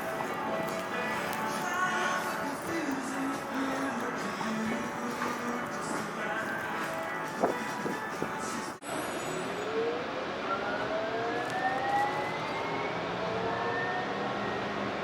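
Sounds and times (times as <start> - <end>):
electric traction motors whining: 8.9 - 15.0.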